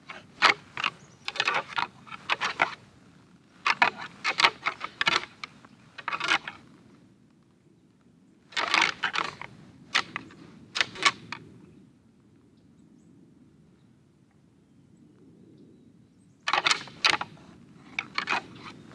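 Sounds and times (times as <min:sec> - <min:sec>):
antlers clashing and grinding: 0:00.1 - 0:02.8, 0:03.6 - 0:06.6, 0:08.6 - 0:11.2, 0:16.5 - 0:18.9.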